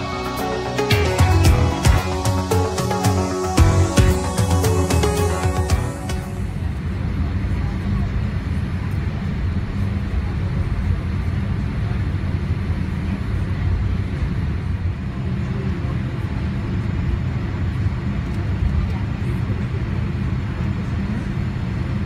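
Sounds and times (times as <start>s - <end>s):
airplane cabin engine rumble: 0.0s - 22.0s.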